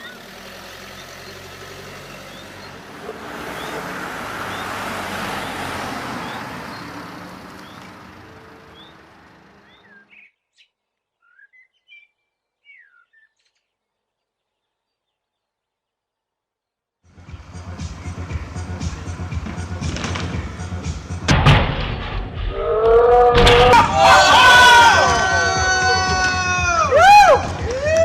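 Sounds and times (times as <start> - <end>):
motor vehicle passing: 0.0 - 10.2, 17.1 - 21.3
faint bird chirps: 9.6 - 15.6.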